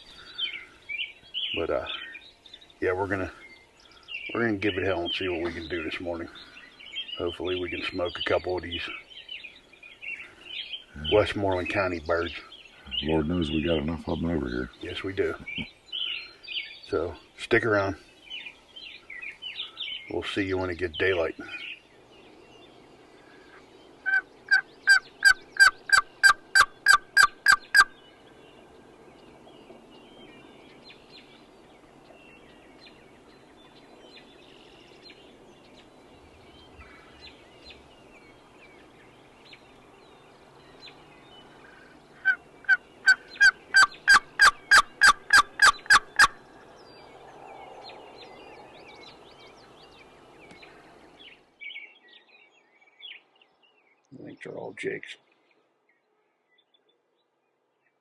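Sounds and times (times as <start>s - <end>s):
turkey yelping: 24.0s - 27.9s, 42.2s - 46.4s.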